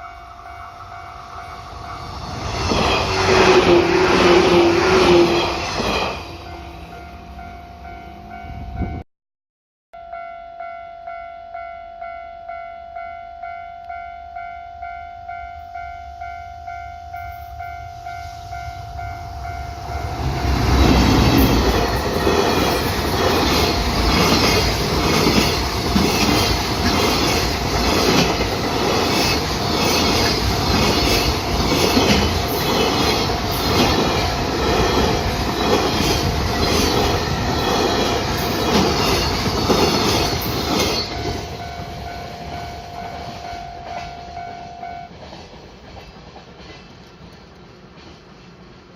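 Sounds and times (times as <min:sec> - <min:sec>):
level-crossing warning bell ringing: 0:00.0 - 0:09.0, 0:10.0 - 0:45.2
train wheels clattering over rail joints: 0:20.8 - 0:41.6.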